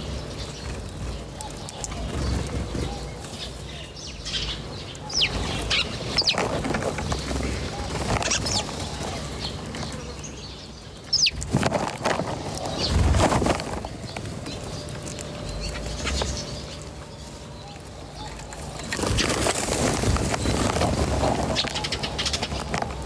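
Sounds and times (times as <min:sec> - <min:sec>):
small birds chirping: 0:00.0 - 0:23.0
rustling noise: 0:11.3 - 0:18.0, 0:18.6 - 0:23.0.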